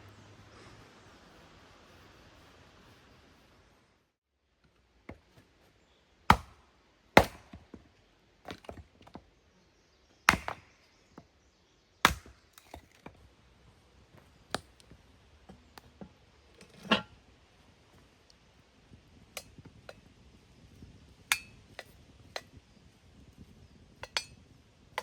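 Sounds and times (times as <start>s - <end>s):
chopping knocks and cracks: 6.3s - 6.6s, 7.2s - 7.6s, 10.3s - 10.7s, 12.1s - 13.0s.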